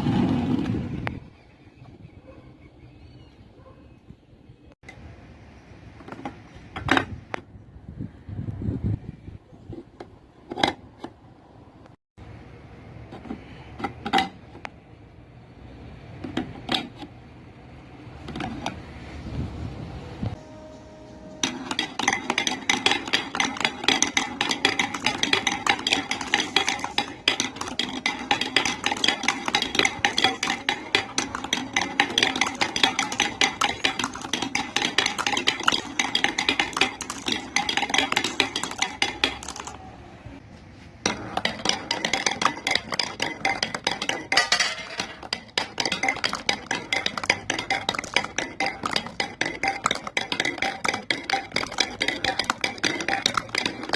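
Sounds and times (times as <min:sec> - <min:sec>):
marbles rolling and clacking on track: 0:21.4 - 0:39.8, 0:41.1 - 0:53.9.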